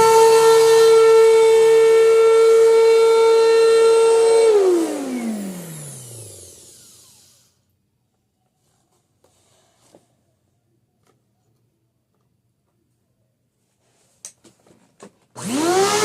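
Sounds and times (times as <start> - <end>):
vacuum cleaner motor whining: 0.0 - 7.6, 15.4 - 16.0.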